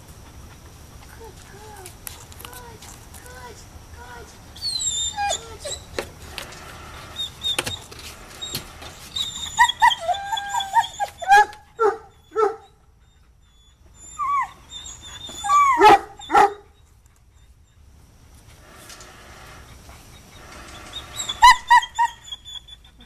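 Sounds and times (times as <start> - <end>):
dog whining and yipping: 4.6 - 6.0, 7.1 - 17.9, 19.6 - 23.0.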